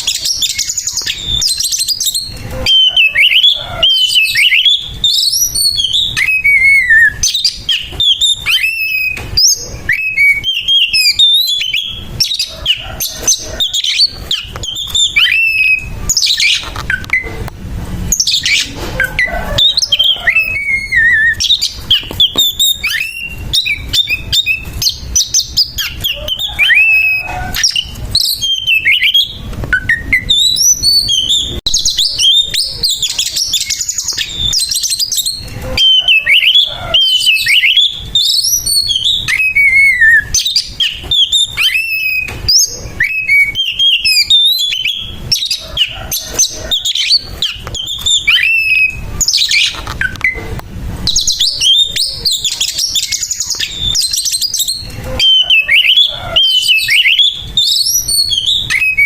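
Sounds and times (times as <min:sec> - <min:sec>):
bird singing harsh song: 0:00.0 - 0:59.0.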